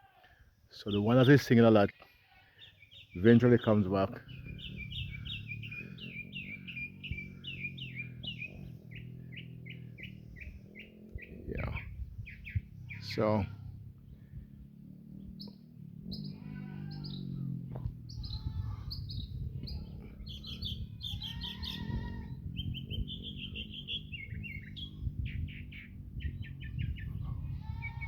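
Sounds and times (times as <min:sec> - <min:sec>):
mockingbird singing: 0:00.8 - 0:01.8, 0:02.6 - 0:28.0
low rumble: 0:04.2 - 0:21.0.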